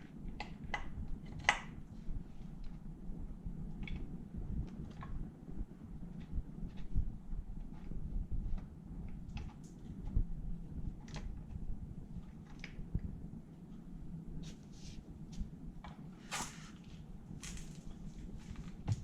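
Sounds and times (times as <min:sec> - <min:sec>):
steady low rumble: 0:00.0 - 0:19.0.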